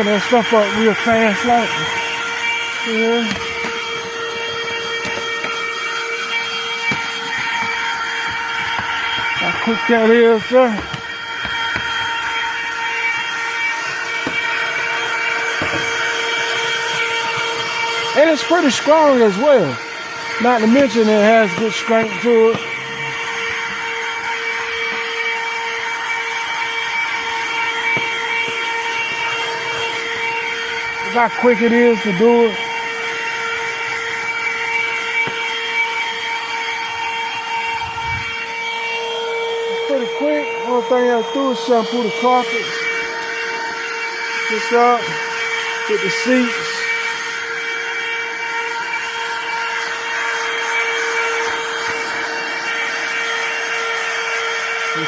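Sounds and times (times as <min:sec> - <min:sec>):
vacuum cleaner motor whine: 0:00.0 - 0:55.0.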